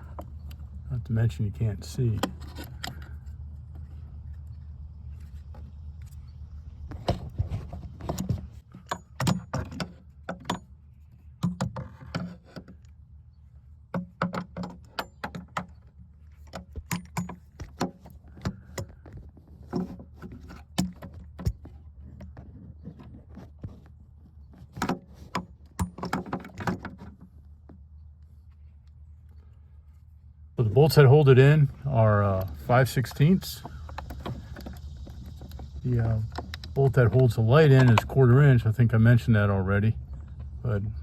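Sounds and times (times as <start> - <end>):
low hum: 0.0 - 8.7, 27.2 - 41.0
tools and parts clicking: 13.9 - 18.9.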